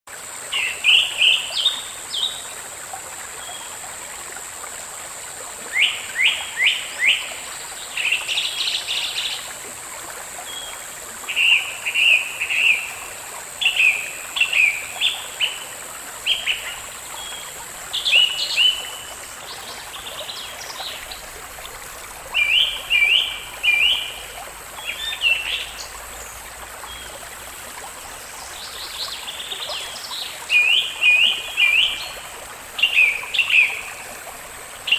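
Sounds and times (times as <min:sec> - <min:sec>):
steady background hiss: 0:00.1 - 0:34.9
small songbirds chirping: 0:10.4 - 0:27.3, 0:28.0 - 0:34.9.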